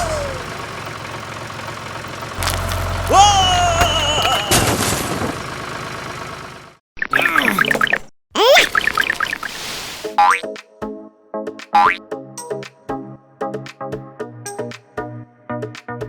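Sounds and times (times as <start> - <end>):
toy tractor engine rumble: 0.0 - 6.8.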